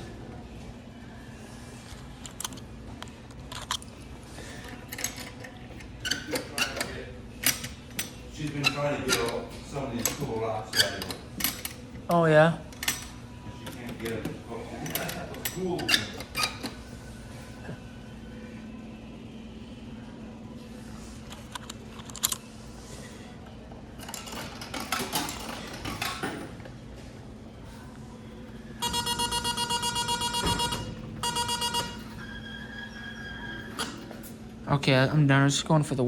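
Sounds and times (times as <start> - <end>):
low electrical hum: 0.0 - 36.0
short steady beep: 28.8 - 32.0
arcade electronic buzzer pulsing: 28.8 - 33.6.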